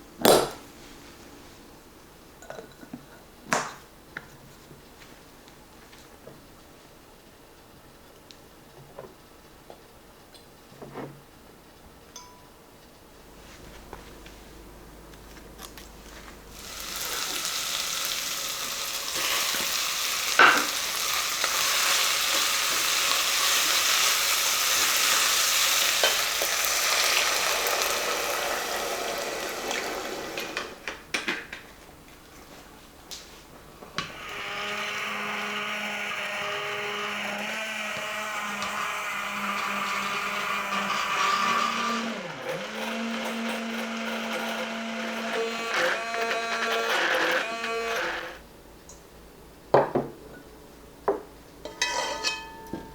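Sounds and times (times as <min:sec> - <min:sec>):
hand blender motor running: 0:15.6 - 0:30.8, 0:34.0 - 0:48.4.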